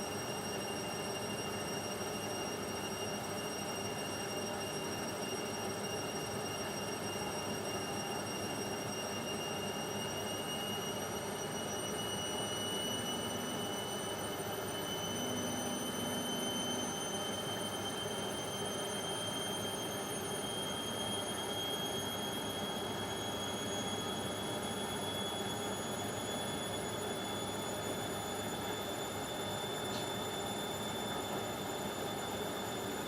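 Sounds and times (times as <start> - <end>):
washing machine motor whine: 0.0 - 33.0.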